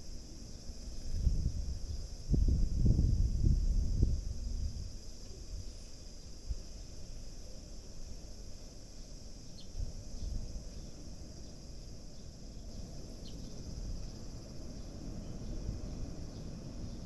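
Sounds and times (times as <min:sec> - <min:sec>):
high-pitched insect chorus: 0:00.0 - 0:17.0.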